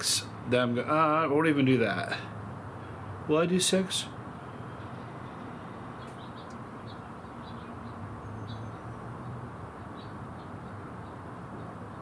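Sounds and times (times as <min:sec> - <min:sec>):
small birds chirping: 0:02.6 - 0:12.0.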